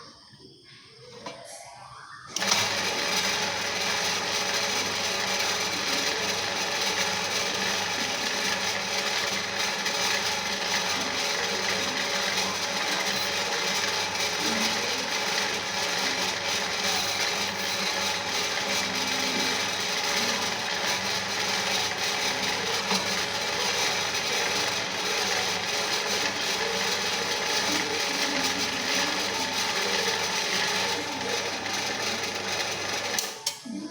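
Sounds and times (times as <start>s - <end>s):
ice shaving machine whirring: 2.3s - 33.6s.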